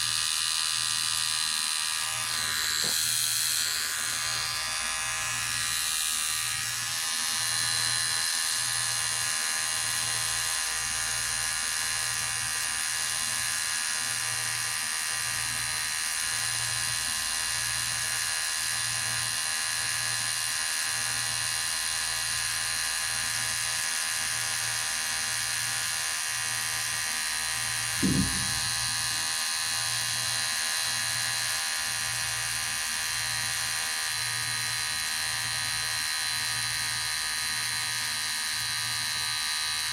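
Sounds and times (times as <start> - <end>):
electric hair clipper buzzing: 0.0 - 39.9
low thump: 28.0 - 29.3.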